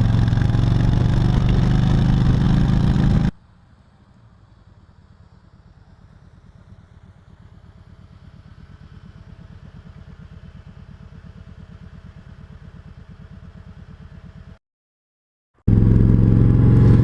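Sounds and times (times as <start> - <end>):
motorcycle engine idling: 0.0 - 3.3, 4.7 - 14.6, 15.7 - 17.0.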